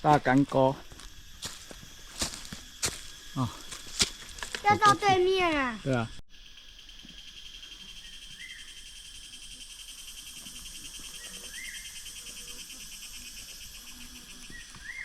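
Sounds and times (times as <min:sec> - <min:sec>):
insects buzzing: 0:00.0 - 0:15.0
short insect call: 0:00.0 - 0:15.0.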